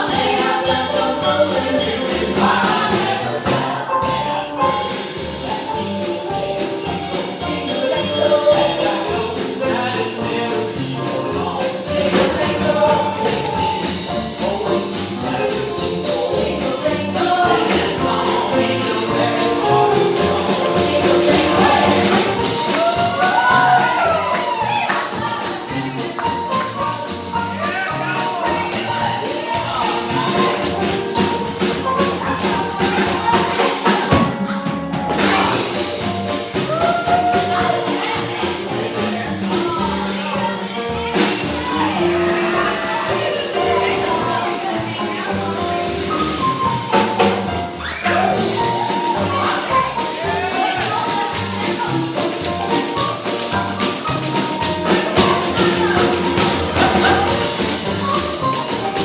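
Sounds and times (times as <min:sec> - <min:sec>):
singing over a rhythmic beat: 0:00.0 - 0:59.0.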